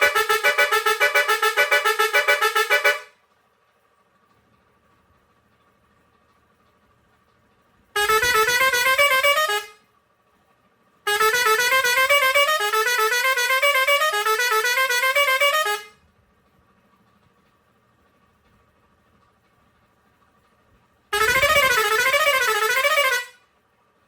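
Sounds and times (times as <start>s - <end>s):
air horn playing climbing notes: 0.0s - 3.1s, 8.0s - 9.8s, 11.1s - 16.0s, 21.1s - 23.4s.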